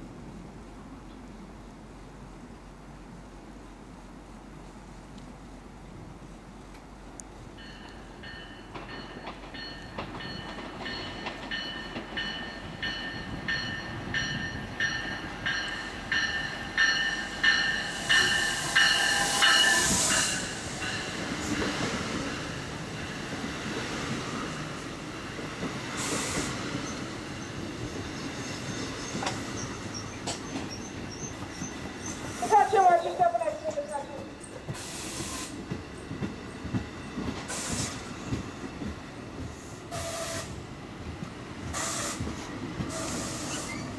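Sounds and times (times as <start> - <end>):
rails ringing: 7.6 - 23.4
train wheels clattering: 7.6 - 43.9.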